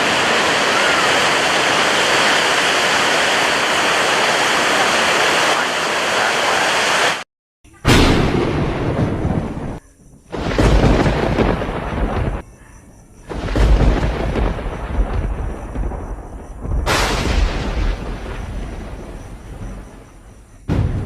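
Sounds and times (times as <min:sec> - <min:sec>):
thunder claps and rumbling: 0:07.9 - 0:12.4, 0:13.3 - 0:21.0.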